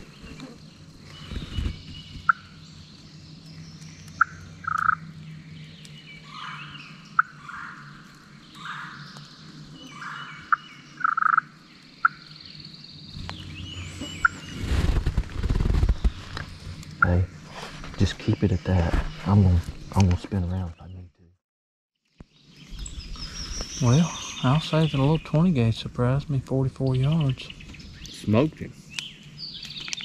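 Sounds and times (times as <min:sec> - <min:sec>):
turkeys gobbling and clucking: 0:10.0 - 0:11.4
rustling handling noise: 0:13.2 - 0:19.9.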